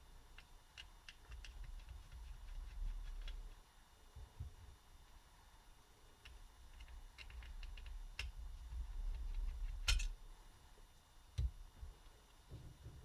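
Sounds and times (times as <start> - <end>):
small clicks of laptop fan parts: 0.2 - 3.7, 6.0 - 10.3, 11.3 - 12.6.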